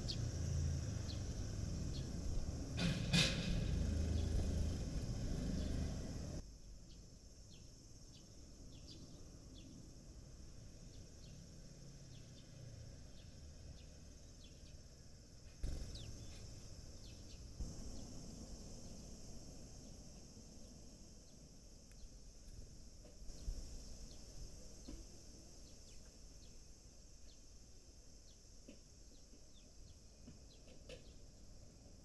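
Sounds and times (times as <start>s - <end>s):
sparrows chirping: 0.0s - 9.9s, 12.1s - 14.8s, 15.6s - 18.2s
outdoor background noise: 0.0s - 32.0s.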